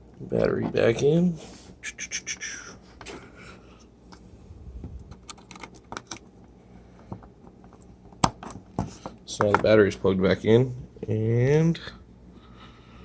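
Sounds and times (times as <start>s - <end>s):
plastic parts clicking and tapping: 5.1s - 6.3s.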